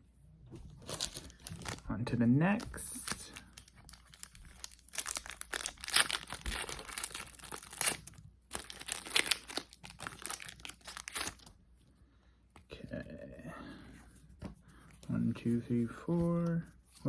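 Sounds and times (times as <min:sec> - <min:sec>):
foil wrapper tearing and crinkling: 0:02.7 - 0:11.5.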